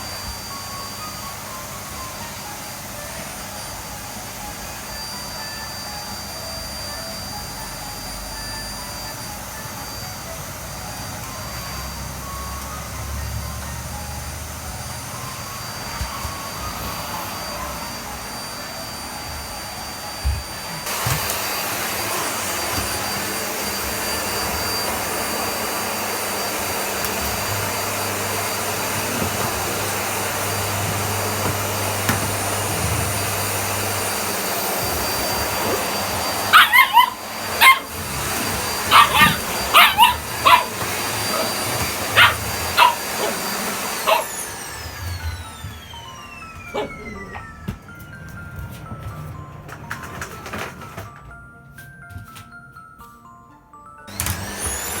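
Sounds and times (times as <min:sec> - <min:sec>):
vacuum cleaner running: 0:00.0 - 0:51.6, 0:54.0 - 0:55.0
puppy yapping: 0:36.4 - 0:44.4, 0:46.7 - 0:47.6.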